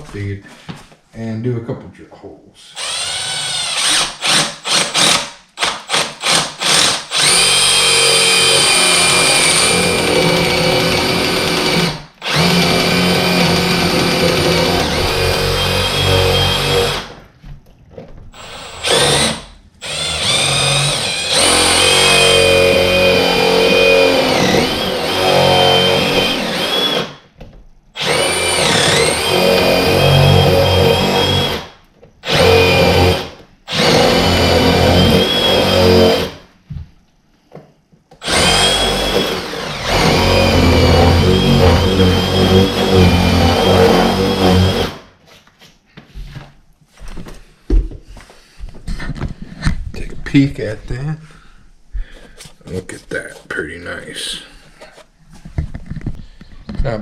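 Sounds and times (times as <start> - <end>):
power drill boring into wood: 2.8 - 17.2, 18.4 - 27.2, 28.0 - 36.4, 38.2 - 45.1.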